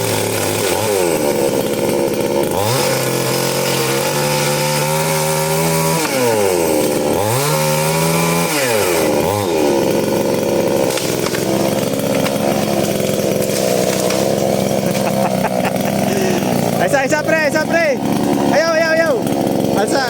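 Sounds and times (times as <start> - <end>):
off-road vehicle engine revving: 0.0 - 20.0.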